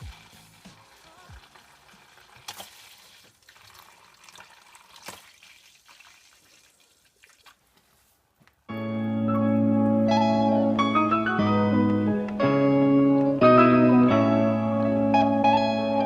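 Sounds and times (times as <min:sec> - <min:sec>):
liquid dripping and trickling: 0:00.0 - 0:07.8.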